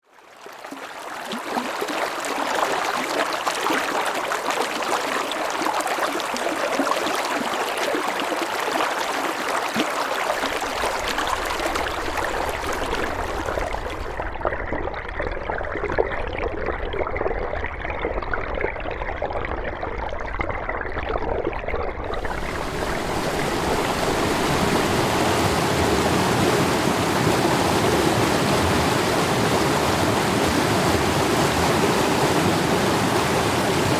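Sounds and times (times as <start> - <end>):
water rushing over rocks: 22.1 - 33.9.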